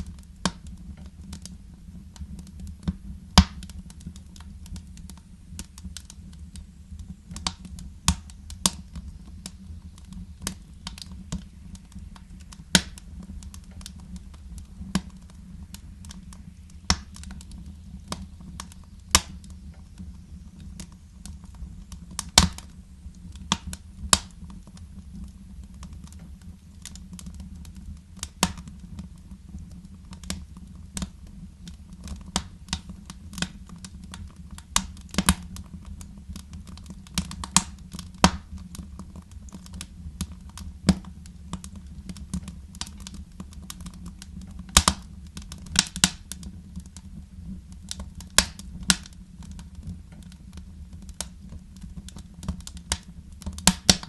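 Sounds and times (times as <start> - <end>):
wood fire crackling: 0.0 - 54.0
low rumble: 6.3 - 24.3.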